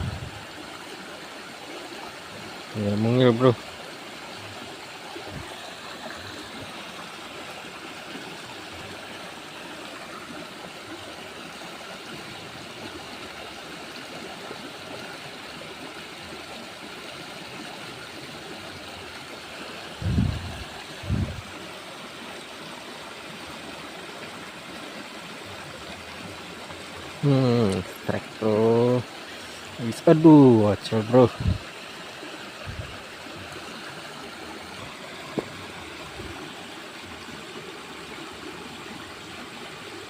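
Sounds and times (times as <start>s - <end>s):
flowing water rushing: 0.0s - 40.0s
short low thumps: 20.0s - 21.4s.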